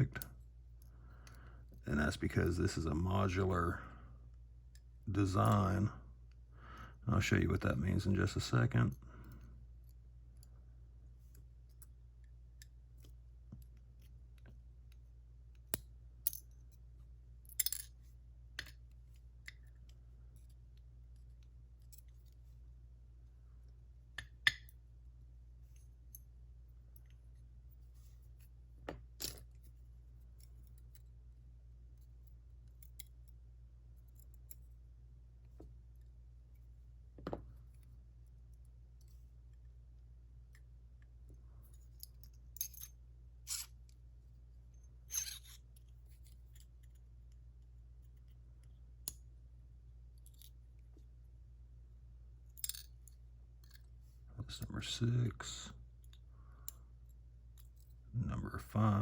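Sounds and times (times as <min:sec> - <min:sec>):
metallic clicks of lock parts: 0:24.2 - 0:24.8, 0:32.0 - 0:33.4, 0:41.7 - 0:44.0, 0:52.5 - 0:53.9.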